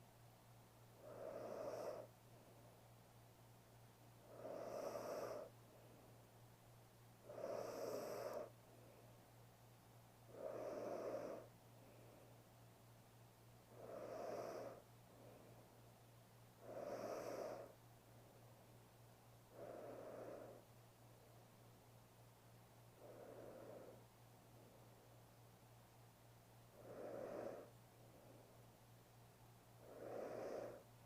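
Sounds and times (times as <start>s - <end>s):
woman snoring: 1.0s - 2.1s, 4.3s - 5.5s, 7.2s - 8.5s, 10.3s - 11.5s, 13.7s - 14.8s, 16.6s - 17.8s, 26.8s - 27.7s, 29.8s - 30.8s.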